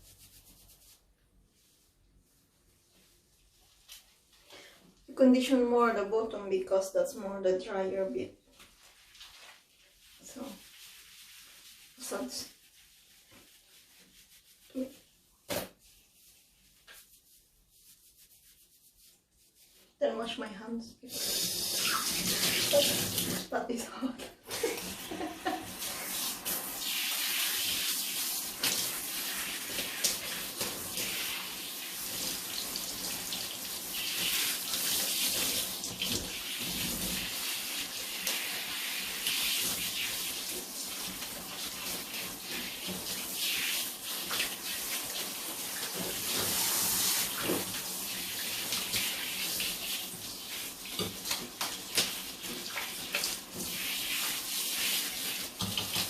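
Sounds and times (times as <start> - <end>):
tap water running: 21.1 - 23.6, 24.4 - 56.0.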